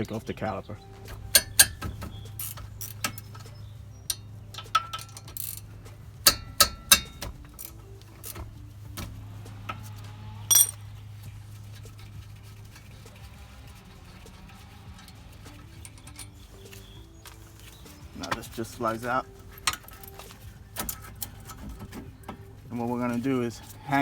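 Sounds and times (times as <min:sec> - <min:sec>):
low steady hum: 0:00.0 - 0:24.0
metallic tool clicks and clinks: 0:10.5 - 0:10.8.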